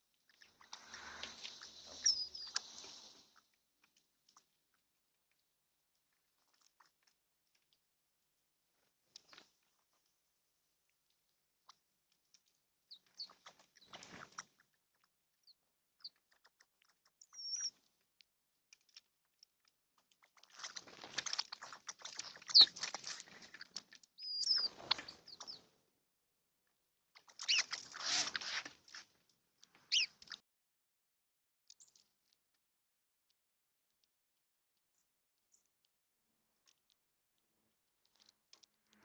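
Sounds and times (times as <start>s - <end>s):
short high bird chirps: 0.9s - 2.7s, 17.2s - 17.8s, 22.5s - 22.8s, 24.2s - 25.6s, 29.9s - 30.2s.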